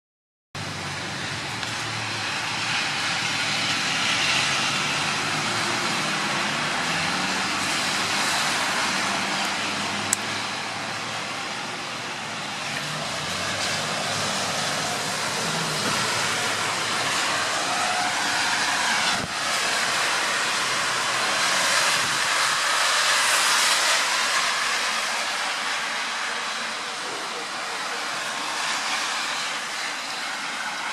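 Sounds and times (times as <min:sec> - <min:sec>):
strong wind: 0:00.6 - 0:26.1
rain: 0:00.6 - 0:30.9.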